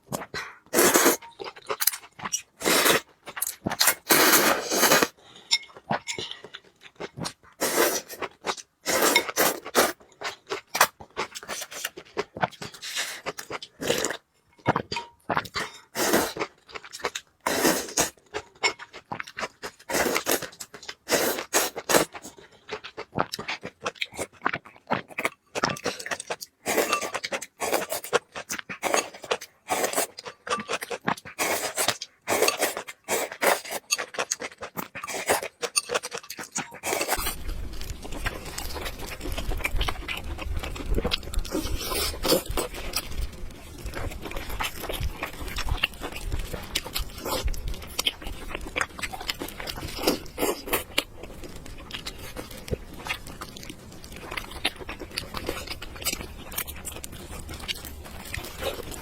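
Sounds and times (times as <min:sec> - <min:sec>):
slurping and chewing noodles: 0:00.0 - 0:05.2, 0:05.8 - 0:14.2, 0:14.8 - 0:59.0
low rumble: 0:37.2 - 0:41.5.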